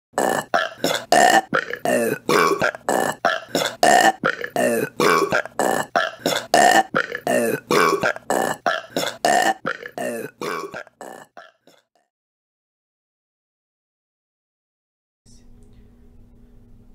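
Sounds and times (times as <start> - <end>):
short loud burps: 0.2 - 11.9.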